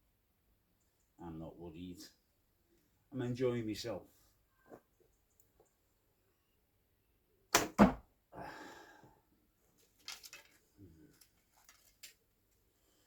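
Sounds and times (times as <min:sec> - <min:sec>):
arrow striking target: 0:07.6 - 0:08.0
soft rustle: 0:09.6 - 0:13.0.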